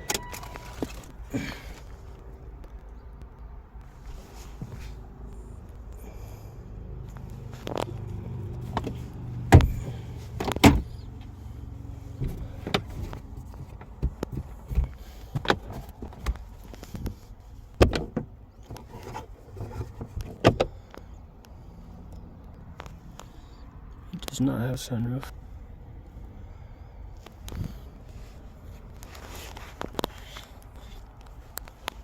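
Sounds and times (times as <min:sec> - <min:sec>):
knocks and clicks of car interior: 0:08.6 - 0:11.3, 0:12.1 - 0:20.8.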